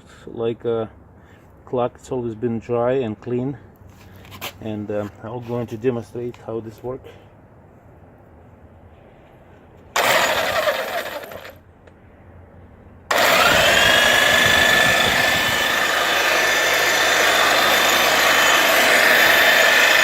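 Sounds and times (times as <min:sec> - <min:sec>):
demolition hammer motor whine: 0:10.0 - 0:11.6, 0:13.1 - 0:20.0.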